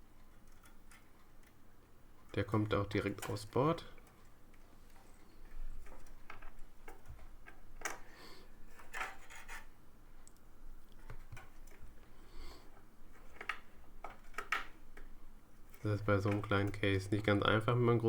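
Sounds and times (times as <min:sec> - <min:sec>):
plastic rubbing and scraping: 0:08.7 - 0:09.7.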